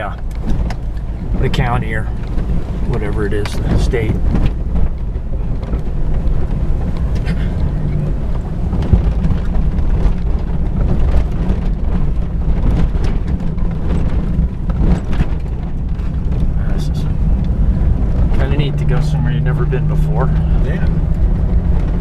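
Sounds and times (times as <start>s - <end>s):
car engine running: 0.0s - 22.0s
knocks and rattles: 0.0s - 22.0s.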